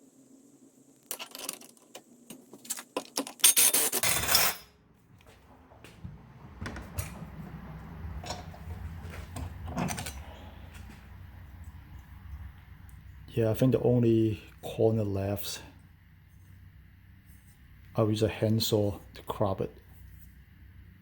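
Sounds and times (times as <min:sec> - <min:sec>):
harsh metal scraping: 0:03.4 - 0:04.8
metallic clinks and knocks: 0:08.2 - 0:10.4.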